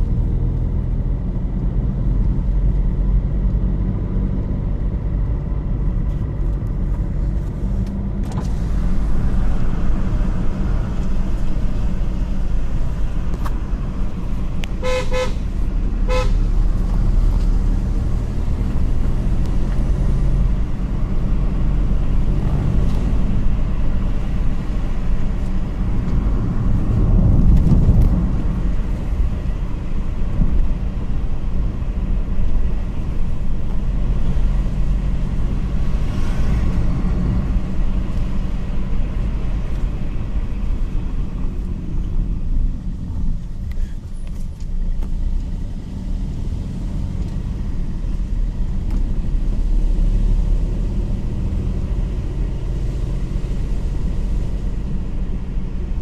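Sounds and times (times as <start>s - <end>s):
vehicle engine rumbling: 0.0s - 56.0s
horn honks: 14.8s - 16.6s.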